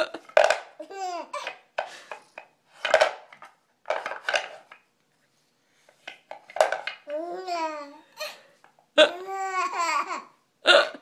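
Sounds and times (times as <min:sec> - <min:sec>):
baby laughing: 0:00.8 - 0:01.6, 0:07.1 - 0:11.0.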